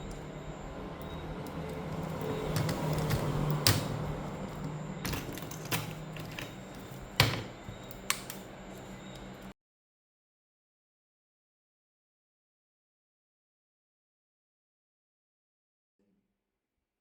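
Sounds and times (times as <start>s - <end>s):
steady low hum: 0.0s - 9.5s
clicks and knocks of laptop parts: 2.0s - 4.0s, 7.2s - 8.4s.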